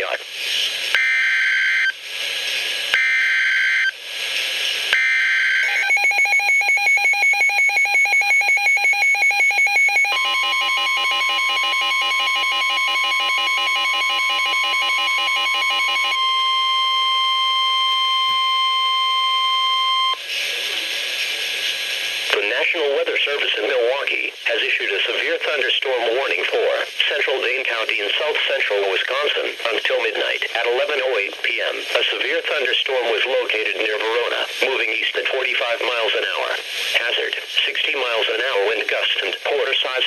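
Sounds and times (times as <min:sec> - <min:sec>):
steady warning alarm tone: 0:01.0 - 0:02.0, 0:02.9 - 0:04.0, 0:04.9 - 0:20.2
fast pulsing beeps: 0:05.0 - 0:16.2
beeping tones: 0:05.0 - 0:20.2.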